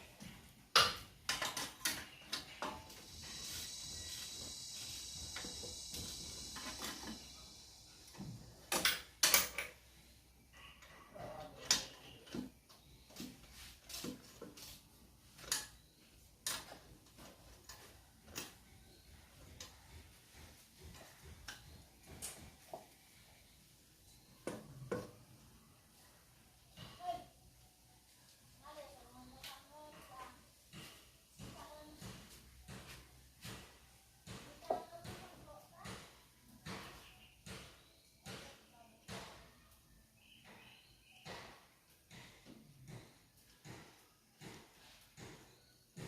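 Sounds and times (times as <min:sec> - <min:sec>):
faint high whine: 0:02.5 - 0:09.0.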